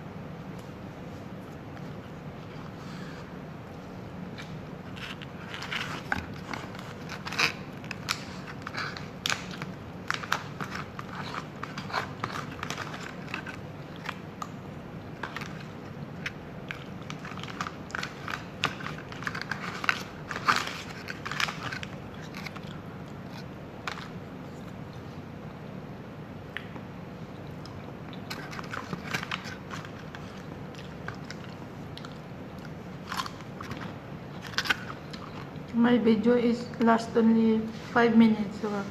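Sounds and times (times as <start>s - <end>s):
person chewing food: 4.3s - 25.6s, 26.6s - 35.7s.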